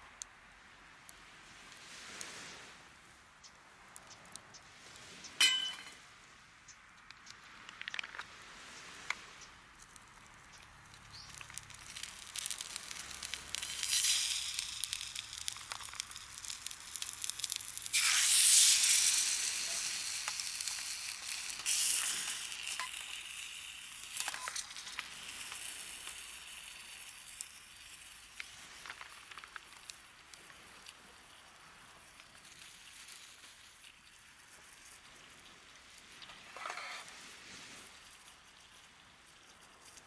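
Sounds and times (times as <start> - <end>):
small crackles and pops: 0.0 - 5.4, 6.6 - 40.0
food sizzling in a hot pan: 11.0 - 31.0.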